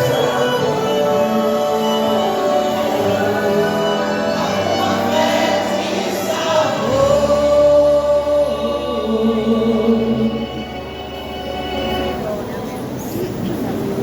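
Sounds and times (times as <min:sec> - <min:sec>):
vocal group singing a hymn: 0:00.0 - 0:11.2
musical accompaniment: 0:00.0 - 0:12.9.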